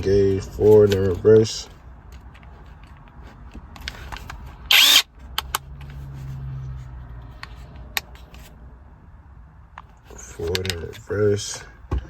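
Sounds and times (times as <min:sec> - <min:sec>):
impact wrench spinning: 0:04.7 - 0:05.1.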